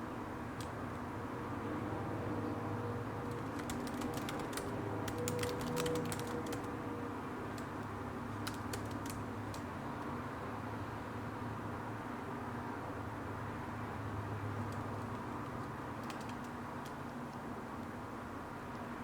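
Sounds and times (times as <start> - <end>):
steady background hum: 0.0 - 19.0
typing on computer keyboard: 3.2 - 6.8, 7.5 - 9.7, 14.6 - 17.1.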